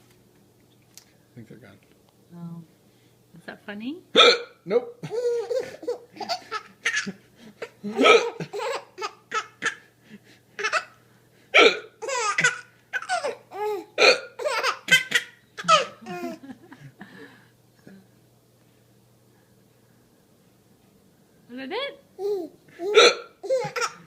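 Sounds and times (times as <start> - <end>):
man hiccuping: 4.2 - 4.9, 7.7 - 8.5, 11.6 - 12.0, 14.0 - 14.4, 22.8 - 23.9
baby laughing: 5.0 - 9.8, 10.6 - 11.0, 12.0 - 16.5, 22.2 - 24.0.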